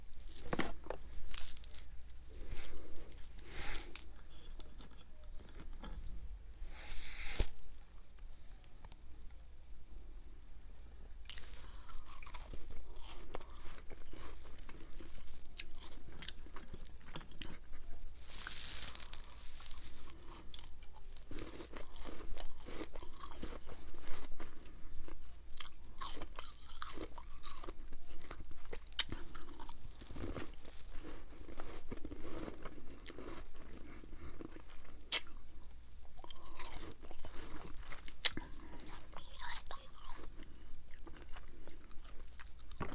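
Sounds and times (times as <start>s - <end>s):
person crunching ice: 0.3s - 4.1s, 18.2s - 20.7s.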